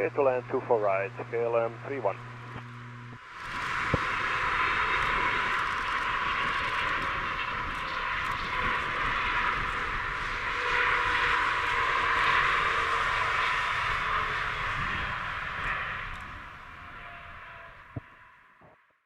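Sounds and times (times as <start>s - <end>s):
airliner jet engines roaring: 0.0s - 18.3s.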